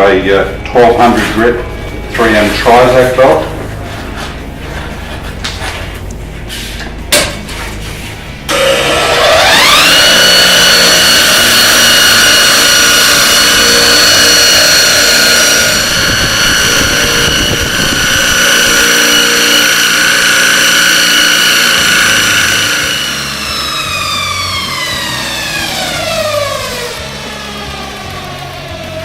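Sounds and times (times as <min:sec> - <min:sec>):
belt sander motor whine: 0:08.5 - 0:29.0.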